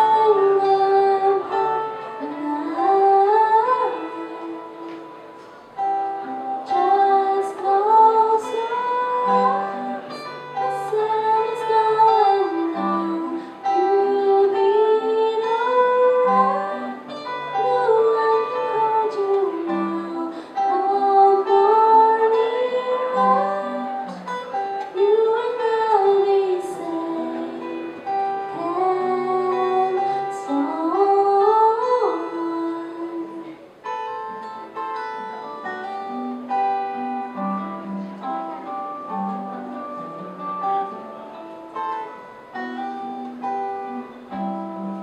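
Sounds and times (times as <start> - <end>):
woman singing a slow ballad: 0.0 - 5.1, 6.6 - 33.6
fingerpicked acoustic guitar: 0.0 - 45.0.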